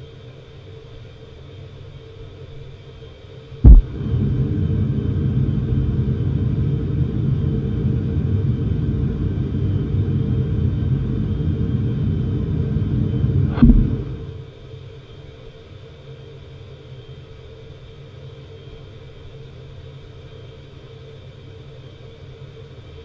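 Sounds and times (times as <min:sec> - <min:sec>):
sharp thump: 0:03.7 - 0:14.5
airplane cabin engine drone: 0:03.7 - 0:14.6.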